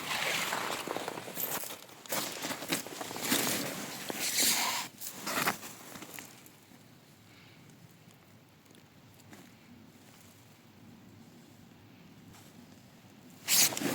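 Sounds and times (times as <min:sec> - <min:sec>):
pebbles and gravel crunching: 0:00.0 - 0:04.2.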